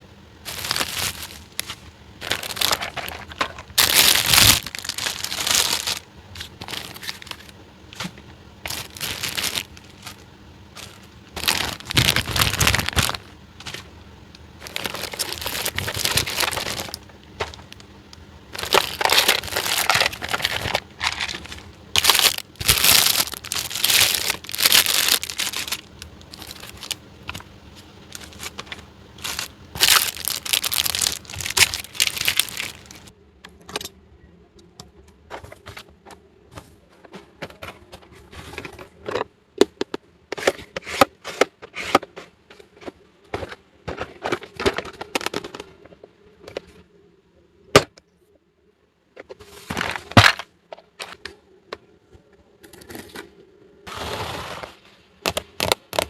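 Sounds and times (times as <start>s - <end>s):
plastic packaging crinkling: 0.4s - 13.9s, 14.6s - 17.9s, 18.5s - 33.1s.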